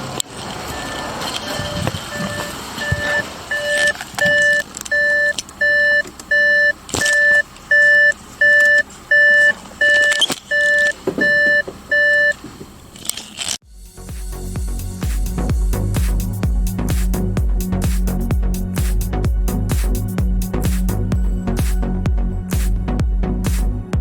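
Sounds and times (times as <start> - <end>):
electronic warning beeper: 0.7 - 12.4.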